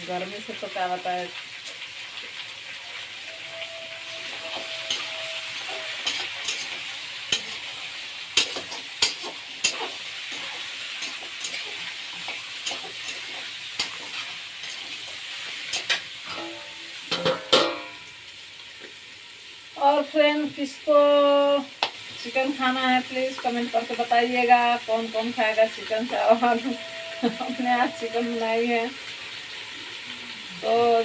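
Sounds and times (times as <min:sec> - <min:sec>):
meat sizzling in a pan: 0:00.0 - 0:31.0
spoon scraping a pan: 0:03.6 - 0:07.8, 0:08.4 - 0:18.0.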